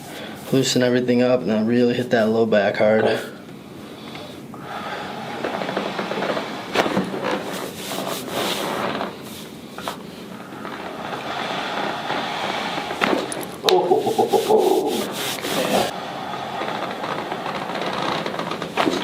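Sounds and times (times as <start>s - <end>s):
hands rubbing clothing: 7.2s - 10.2s, 12.0s - 15.9s.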